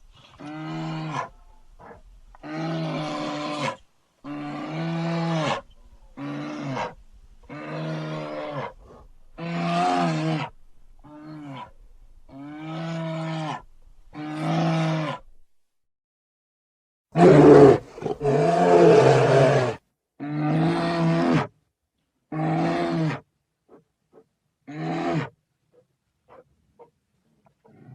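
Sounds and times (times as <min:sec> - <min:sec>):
bear roaring: 0:17.2 - 0:21.5.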